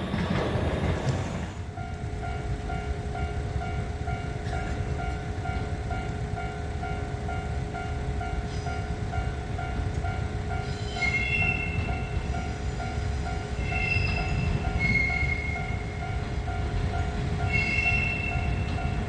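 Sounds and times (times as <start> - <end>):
diesel train rumbling: 0.0 - 19.0
train wheels squealing: 10.6 - 16.1, 17.4 - 19.0.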